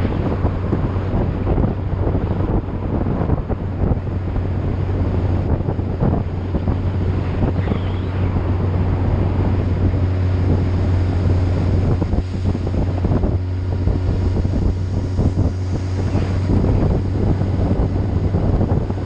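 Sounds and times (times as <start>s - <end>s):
low engine hum: 0.0s - 19.0s
wind buffeting microphone: 0.0s - 19.0s.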